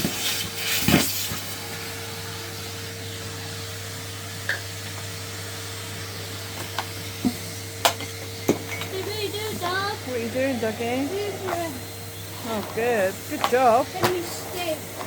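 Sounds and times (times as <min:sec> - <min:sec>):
vacuum cleaner whining: 0:00.0 - 0:15.0
vacuum cleaner thumps and knocks: 0:06.6 - 0:15.0.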